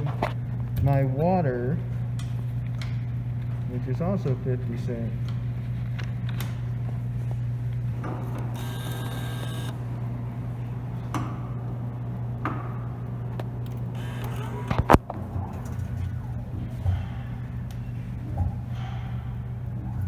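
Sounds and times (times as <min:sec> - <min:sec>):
vending machine humming: 0:00.0 - 0:20.0
mechanical whirring: 0:08.4 - 0:09.8, 0:13.7 - 0:15.1.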